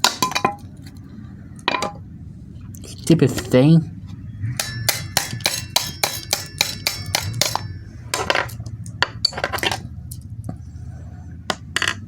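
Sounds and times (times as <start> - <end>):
hard objects knocking and clinking: 0.0 - 0.8, 1.6 - 2.0, 4.6 - 10.3
scraping rattles: 4.5 - 10.6.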